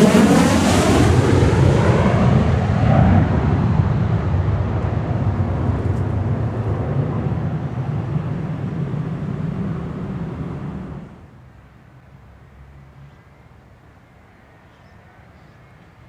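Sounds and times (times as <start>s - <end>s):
jet engine roaring: 0.0s - 11.2s.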